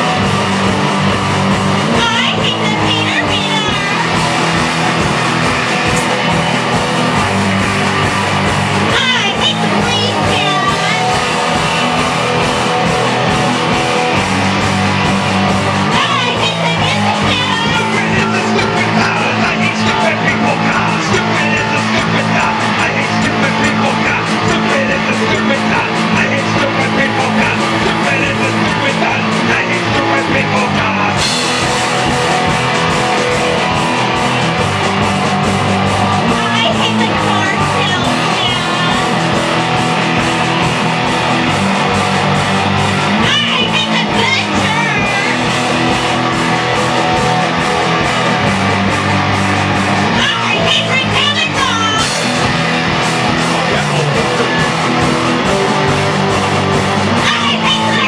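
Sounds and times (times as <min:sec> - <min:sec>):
punk rock band playing live: 0:00.0 - 0:58.0
vocals: 0:00.0 - 0:58.0.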